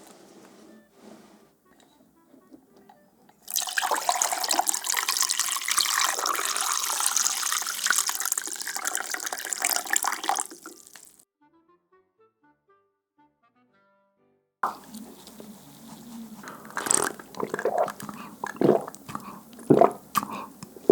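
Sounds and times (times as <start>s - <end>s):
liquid pouring: 3.4s - 11.2s, 14.6s - 20.9s.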